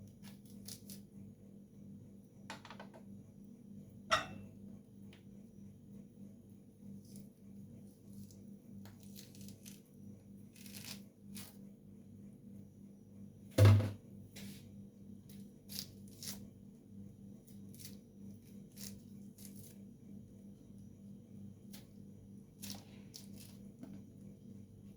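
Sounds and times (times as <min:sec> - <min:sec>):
knife cutting citrus peel: 0:00.1 - 0:01.1, 0:08.1 - 0:09.9, 0:10.5 - 0:11.6, 0:15.3 - 0:16.5, 0:17.5 - 0:19.8.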